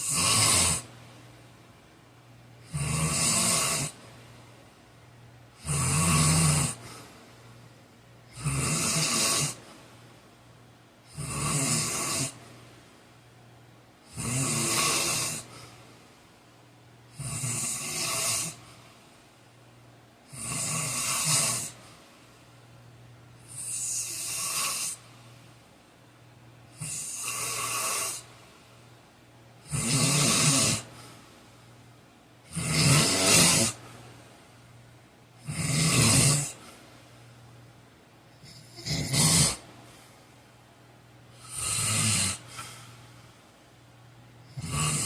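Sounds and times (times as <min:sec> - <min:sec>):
man snoring loudly: 0:00.0 - 0:00.9, 0:02.6 - 0:04.0, 0:05.6 - 0:06.9, 0:08.3 - 0:09.6, 0:11.1 - 0:12.4, 0:14.1 - 0:15.6, 0:17.1 - 0:18.6, 0:20.3 - 0:21.8, 0:23.5 - 0:25.0, 0:26.8 - 0:28.3, 0:29.6 - 0:31.0, 0:32.5 - 0:33.8, 0:35.4 - 0:36.6, 0:38.4 - 0:39.6, 0:41.4 - 0:42.7, 0:44.5 - 0:45.0
faint steady hum: 0:00.0 - 0:45.0.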